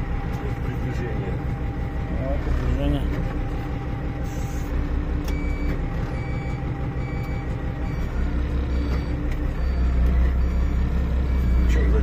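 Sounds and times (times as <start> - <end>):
forklift diesel engine running: 0.0 - 12.0
warning beeper beeps: 5.3 - 12.0.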